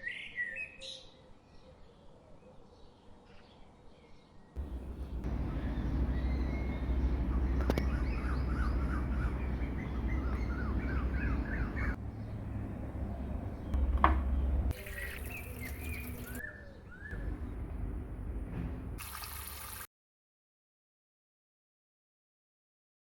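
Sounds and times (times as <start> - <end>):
small birds chirping: 0.0 - 17.7.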